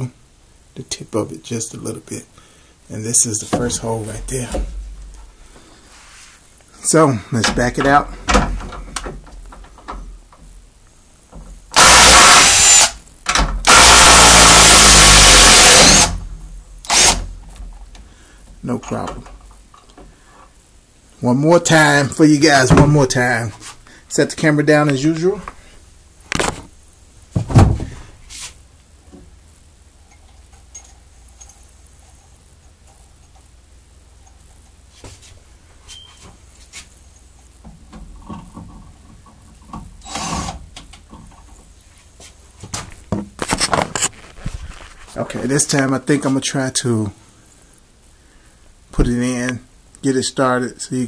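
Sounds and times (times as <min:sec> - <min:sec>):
faint room noise: 0:00.0 - 0:51.0
impact driver hammering: 0:11.8 - 0:16.2.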